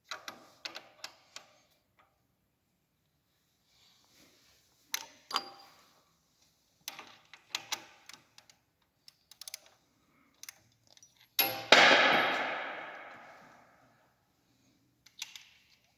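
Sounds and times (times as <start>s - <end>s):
loud knocks: 11.7s - 13.3s.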